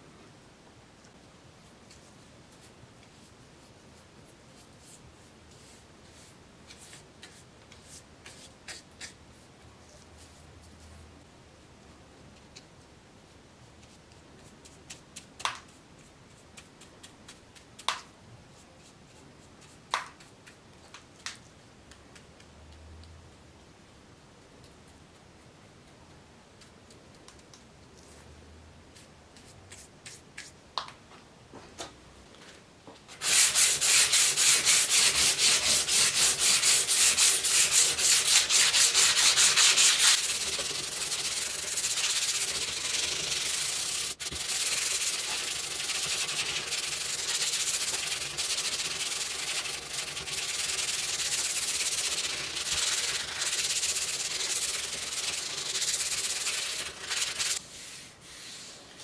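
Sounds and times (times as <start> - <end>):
sanding strokes on metal: 33.2 - 58.8.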